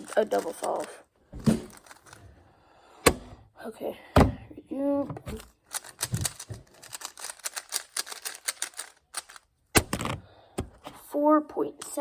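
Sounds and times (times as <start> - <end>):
plastic puzzle cube clicking: 1.7 - 2.2, 5.3 - 10.2.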